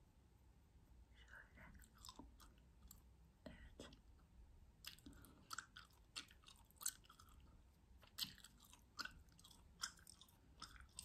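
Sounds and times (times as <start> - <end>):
gum chewing clicks and smacks: 1.6 - 3.1, 4.8 - 11.0.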